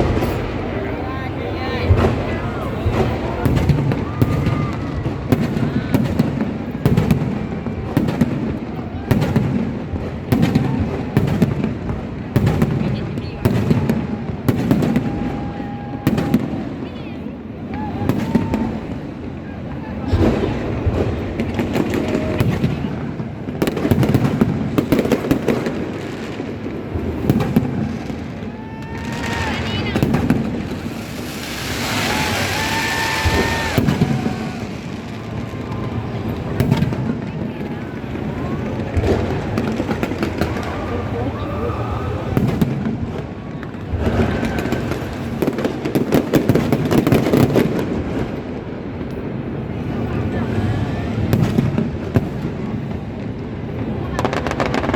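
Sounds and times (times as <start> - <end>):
fireworks bangs and crackles: 0.0 - 54.9.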